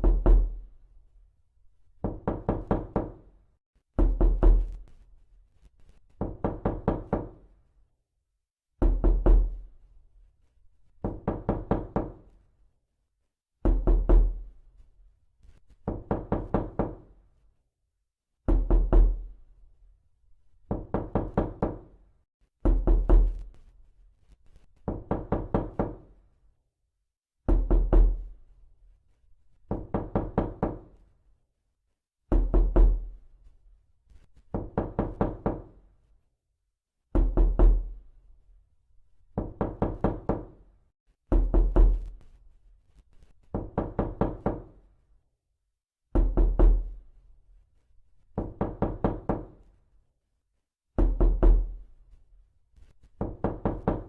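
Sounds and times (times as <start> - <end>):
knuckles knocking on door: 2.0 - 3.2, 6.2 - 7.4, 8.8 - 9.6, 11.0 - 12.2, 15.8 - 17.1, 20.7 - 21.8, 24.9 - 26.0, 29.7 - 30.8, 32.3 - 33.0, 34.5 - 35.7, 37.2 - 37.9, 39.4 - 40.6, 41.3 - 42.1, 43.5 - 44.6, 46.2 - 46.9, 48.4 - 49.6, 51.0 - 51.7, 53.2 - 54.0.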